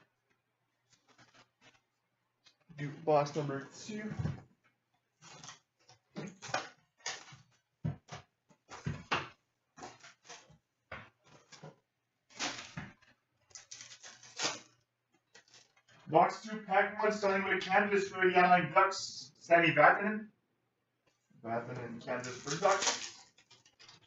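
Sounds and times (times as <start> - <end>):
foil wrapper crinkling and ripping: 13.5 - 14.8, 15.4 - 15.9, 22.2 - 24.0.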